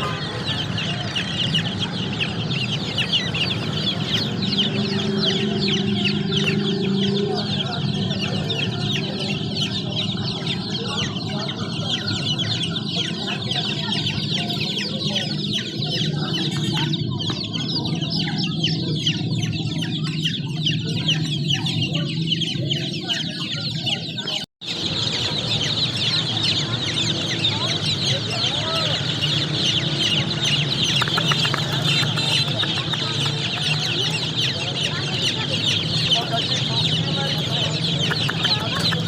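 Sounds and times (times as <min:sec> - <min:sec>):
chicks peeping: 0:00.0 - 0:39.0.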